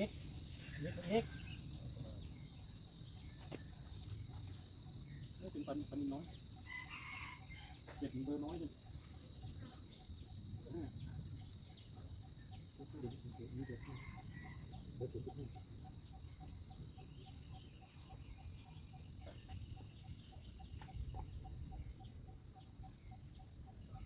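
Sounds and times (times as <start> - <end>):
insects trilling: 0.0 - 24.0
low pulsing insect call: 0.0 - 24.0.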